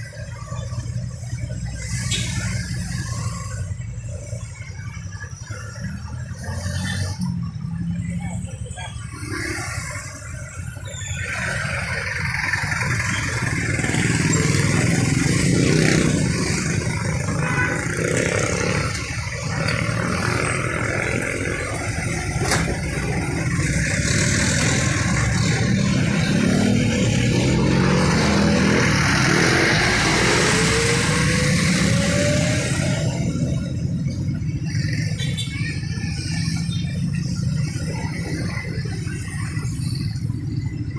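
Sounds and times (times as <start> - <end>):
road noise: 0.0 - 40.9
vehicle engine: 0.0 - 40.9.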